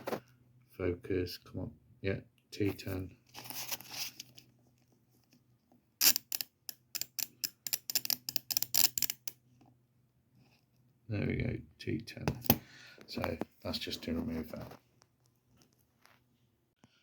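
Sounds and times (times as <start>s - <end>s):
screwdriver bits clicking and rattling: 6.0s - 9.4s.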